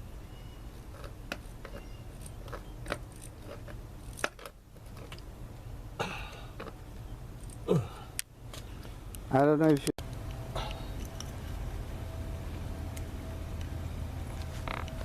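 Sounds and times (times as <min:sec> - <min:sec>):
steady low hum: 0:00.0 - 0:15.0
tools clicking and tapping: 0:00.9 - 0:05.3.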